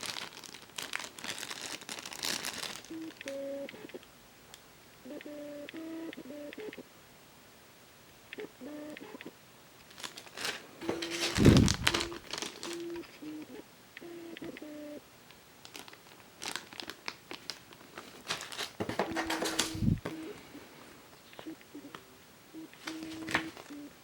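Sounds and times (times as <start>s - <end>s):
plastic packaging crinkling: 0.0s - 3.3s, 9.8s - 13.3s, 15.3s - 20.2s, 22.8s - 23.7s.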